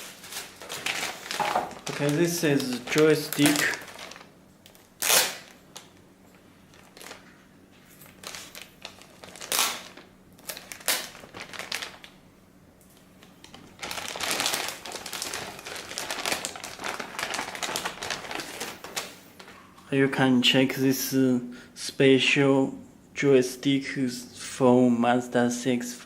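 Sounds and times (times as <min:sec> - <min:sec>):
packaging crinkling: 0:00.0 - 0:12.2, 0:12.9 - 0:19.7.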